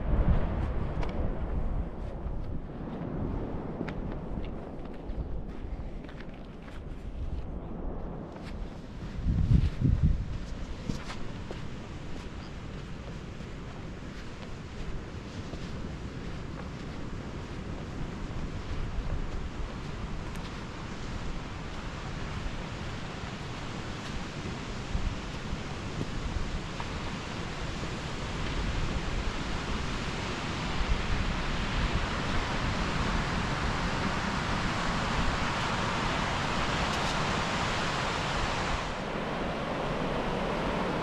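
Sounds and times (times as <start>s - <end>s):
wind on microphone: 0.0s - 41.0s
sea waves breaking: 10.3s - 41.0s.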